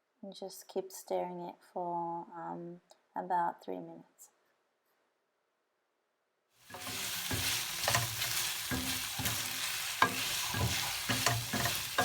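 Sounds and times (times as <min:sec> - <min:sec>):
food sizzling in a frying pan: 0:06.6 - 0:12.0
utensil scraping a pan: 0:06.7 - 0:12.0.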